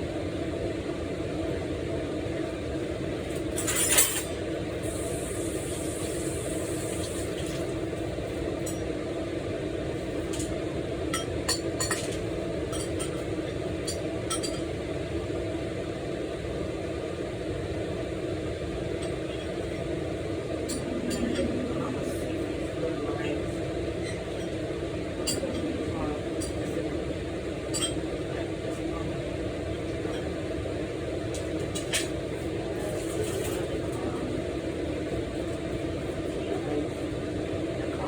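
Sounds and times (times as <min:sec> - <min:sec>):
steady background hum: 0:00.0 - 0:38.0
dishes and utensils clinking: 0:03.6 - 0:04.4, 0:11.2 - 0:13.2, 0:13.9 - 0:14.7, 0:27.7 - 0:28.1.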